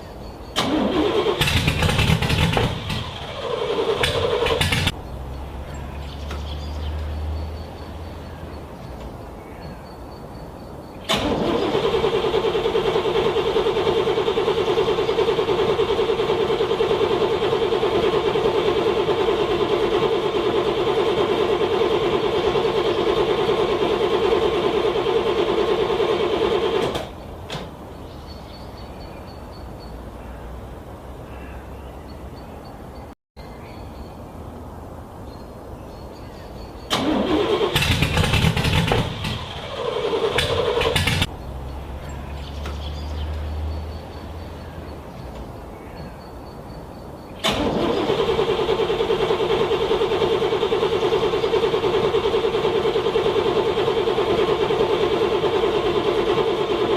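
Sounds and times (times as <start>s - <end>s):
car engine starter cranking: 0.5s - 5.0s, 11.0s - 27.7s, 36.9s - 41.3s, 47.4s - 56.9s.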